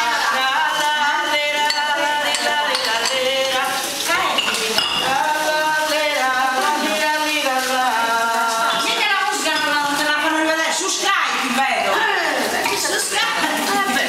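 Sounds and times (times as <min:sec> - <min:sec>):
people singing together: 0:00.0 - 0:14.0
dishes and cutlery clinking: 0:00.1 - 0:10.6.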